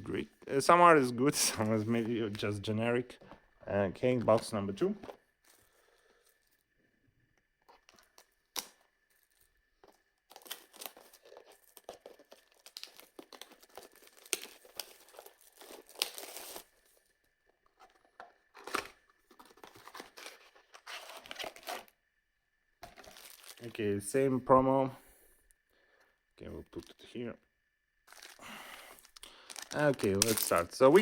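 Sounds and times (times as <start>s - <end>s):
plastic wrapping crinkling: 7.7s - 17.0s, 17.7s - 22.0s, 22.8s - 23.9s, 28.1s - 31.0s.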